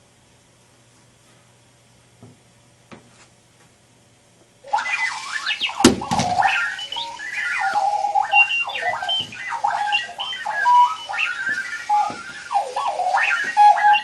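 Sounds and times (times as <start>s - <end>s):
electronic alarm beeps and chirps: 4.7s - 14.0s.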